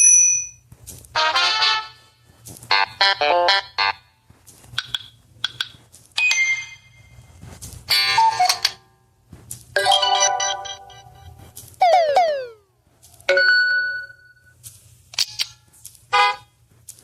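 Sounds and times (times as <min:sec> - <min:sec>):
electronic alert chimes: 0:09.8 - 0:12.6.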